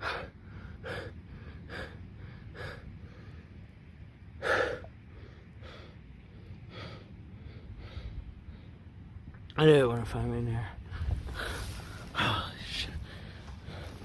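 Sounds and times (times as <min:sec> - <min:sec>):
man panting: 0:00.0 - 0:03.6, 0:04.4 - 0:08.4, 0:11.0 - 0:14.0.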